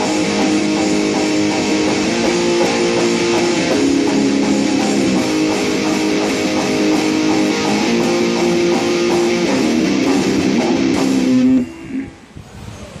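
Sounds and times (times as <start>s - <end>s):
electric guitar playing held notes: 0.0s - 12.3s.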